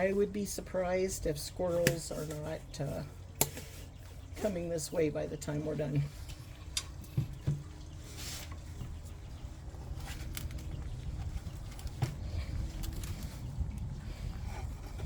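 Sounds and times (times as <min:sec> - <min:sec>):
wind rumble on microphone: 0:08.8 - 0:15.0.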